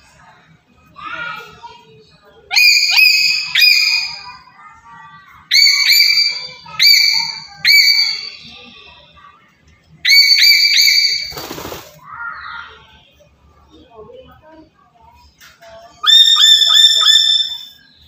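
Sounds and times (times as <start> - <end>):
parrot whistling calls: 2.5 - 4.4, 5.5 - 8.4, 10.0 - 11.4, 16.0 - 17.9.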